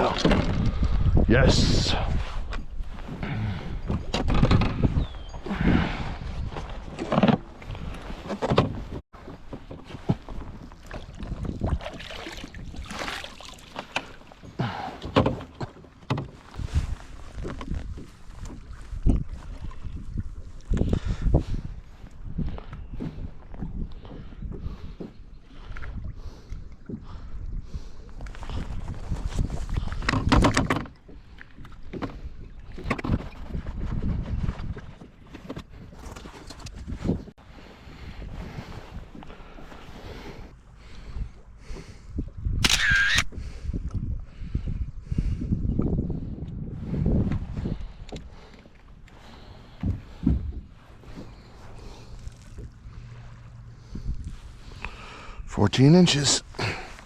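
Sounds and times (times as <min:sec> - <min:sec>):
knocking and clattering on a kayak: 0:00.0 - 0:01.1, 0:02.5 - 0:05.3, 0:06.5 - 0:21.6, 0:22.3 - 0:27.3, 0:28.2 - 0:37.3, 0:47.2 - 0:51.5
wind noise: 0:00.0 - 0:09.0, 0:10.2 - 0:13.2, 0:16.4 - 0:31.0, 0:31.6 - 0:48.5, 0:49.1 - 0:55.5
water splashing: 0:10.8 - 0:14.3.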